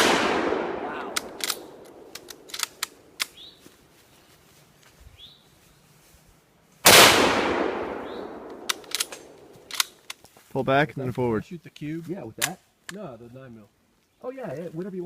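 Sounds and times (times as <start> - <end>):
loud gunshot: 0.0 - 1.2, 6.9 - 8.5
metallic firearm clicks: 1.1 - 3.4, 8.4 - 10.2.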